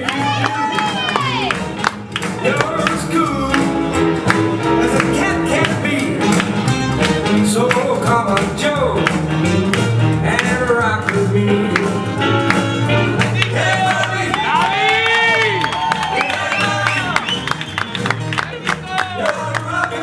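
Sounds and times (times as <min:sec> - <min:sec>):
swing dance music: 0:00.0 - 0:20.0
person singing: 0:02.3 - 0:06.5, 0:10.2 - 0:12.4, 0:18.7 - 0:20.0.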